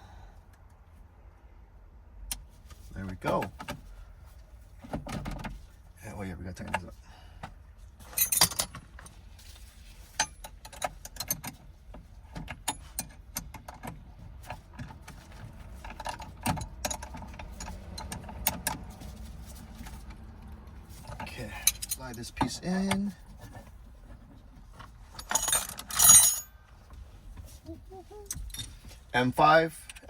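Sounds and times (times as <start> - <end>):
metallic clicks of tools and parts: 25.2 - 26.5.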